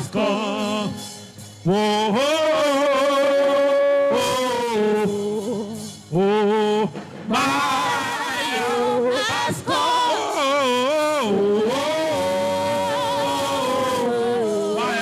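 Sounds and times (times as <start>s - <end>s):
person singing a slow chant: 0.0s - 1.1s, 1.7s - 15.0s.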